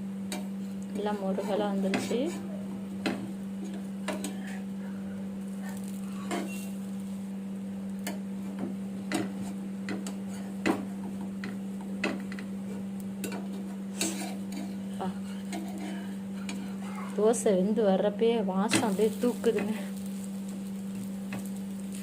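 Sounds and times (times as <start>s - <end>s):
low hum: 0.0s - 22.0s
metal spatula scraping griddle: 5.8s - 7.0s, 8.5s - 11.0s, 12.2s - 17.4s.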